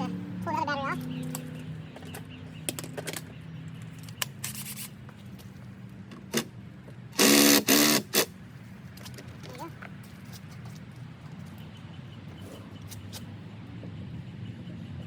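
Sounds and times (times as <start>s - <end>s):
impact driver hammering screw: 7.2s - 8.3s.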